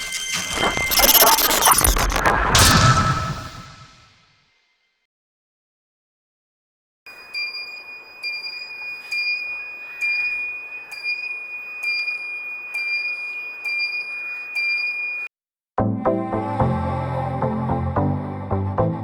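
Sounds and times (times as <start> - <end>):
high-pitched electronic beep: 0.0 - 3.8, 7.1 - 15.3
electronic ticking: 7.1 - 15.3.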